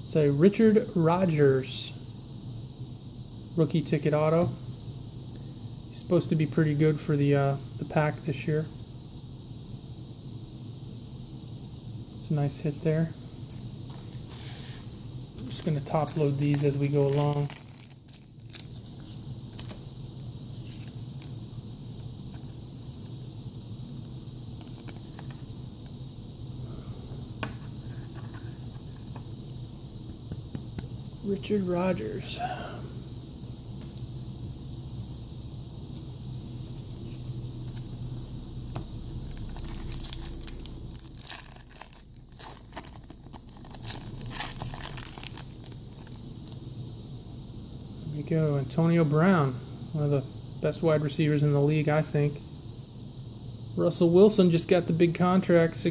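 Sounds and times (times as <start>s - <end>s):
low room hum: 0.0s - 55.9s
cards sliding into plastic sleeves: 13.9s - 17.8s
foil wrapper tearing and crinkling: 15.4s - 19.9s, 39.1s - 46.6s.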